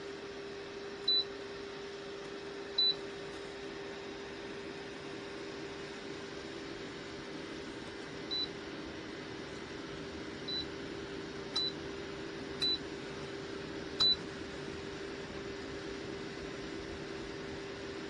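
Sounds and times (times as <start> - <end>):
space heater fan whirring: 0.0 - 18.0.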